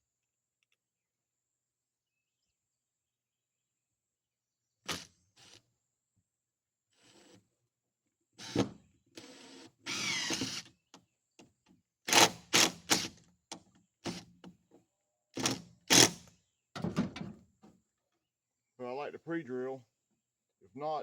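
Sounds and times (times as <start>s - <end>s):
power drill driving screws: 8.4s - 10.7s, 12.1s - 13.2s, 15.4s - 16.3s.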